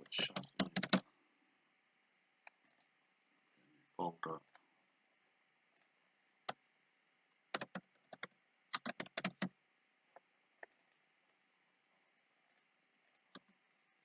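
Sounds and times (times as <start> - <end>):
computer keyboard typing: 0.0 - 1.0, 7.5 - 9.6, 10.6 - 11.0, 12.4 - 13.8.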